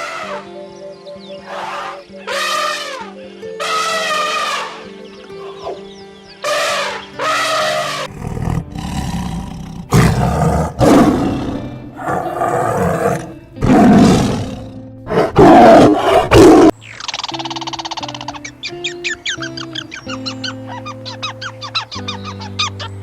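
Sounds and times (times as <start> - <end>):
soft background music: 0.0 - 23.0
big cat roaring: 7.8 - 16.7.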